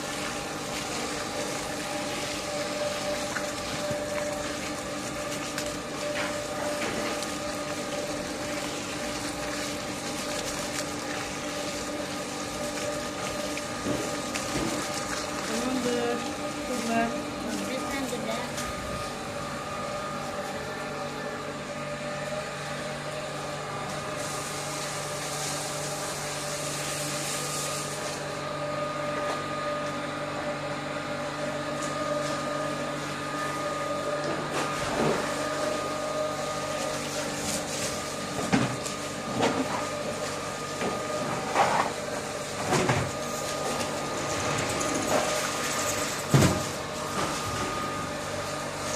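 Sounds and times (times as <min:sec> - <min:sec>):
motor humming: 0:00.0 - 0:48.9.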